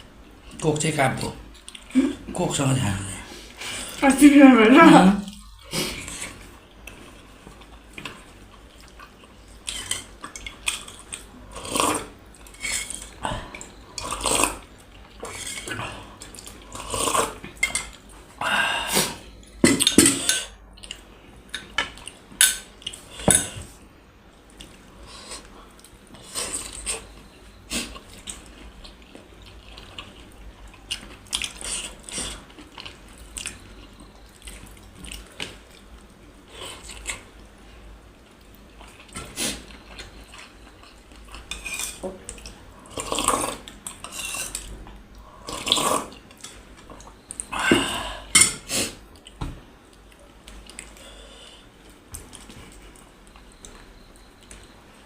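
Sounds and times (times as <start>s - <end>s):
cutlery clinking on dishes: 19.4s - 20.5s.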